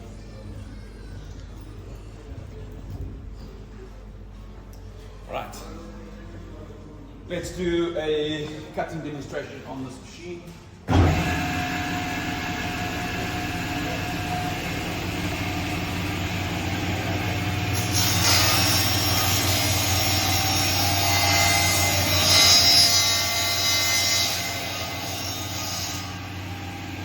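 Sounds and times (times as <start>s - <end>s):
table saw running: 10.9s - 27.0s
saw blade cutting board: 17.7s - 26.4s.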